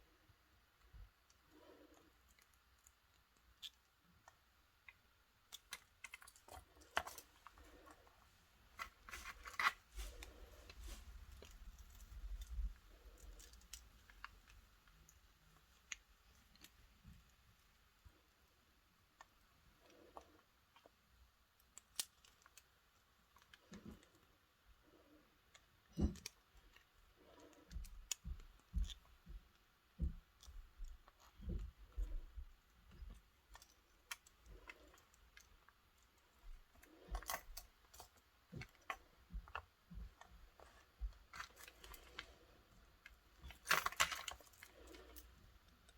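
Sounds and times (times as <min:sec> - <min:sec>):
small metal parts clicking: 0:43.0 - 0:45.9.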